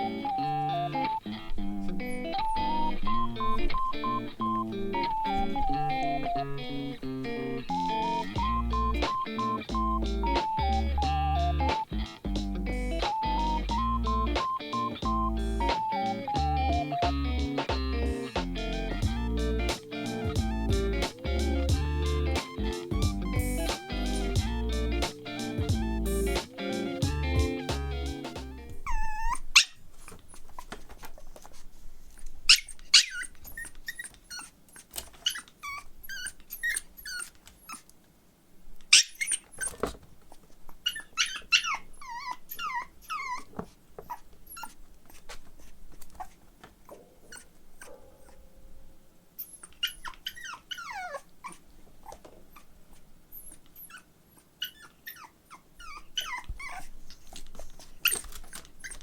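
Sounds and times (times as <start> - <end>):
puppy whining and yipping: 0.0 - 6.8, 7.7 - 11.9, 18.9 - 27.6, 28.6 - 31.3, 32.4 - 37.9, 38.9 - 48.4, 49.4 - 59.0.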